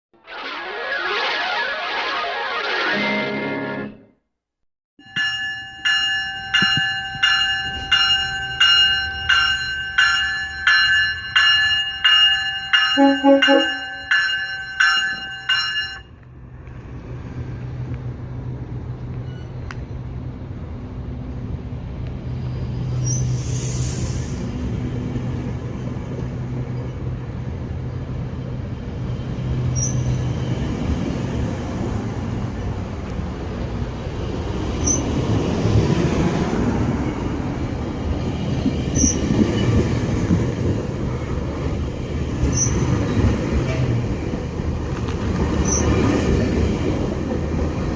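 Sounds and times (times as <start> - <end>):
locomotive bell ringing: 5.0 - 16.2
train wheels rumbling on rails: 5.8 - 47.9
locomotive engine hum: 12.6 - 47.9.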